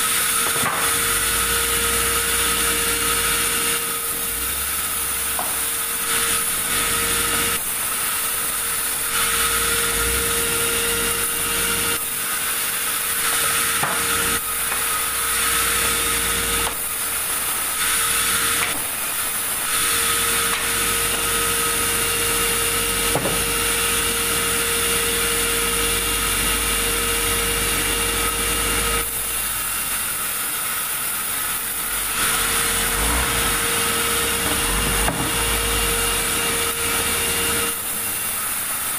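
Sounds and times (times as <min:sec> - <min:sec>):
sawmill saw cutting log: 0:00.0 - 0:38.9.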